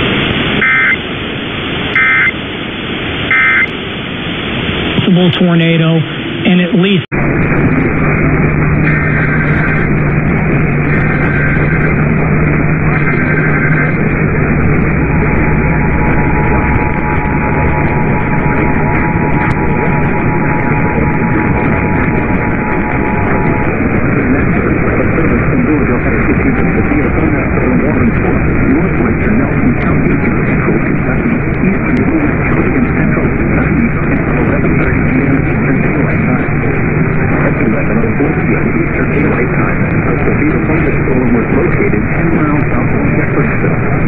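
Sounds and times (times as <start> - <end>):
low hum: 0.0 - 44.0
radio static: 0.0 - 44.0
data burst chirps: 0.5 - 1.1, 1.9 - 2.4, 3.3 - 3.7, 10.8 - 24.7
two-tone attention signal: 0.6 - 1.0, 2.0 - 2.4, 3.3 - 3.7, 15.0 - 24.0.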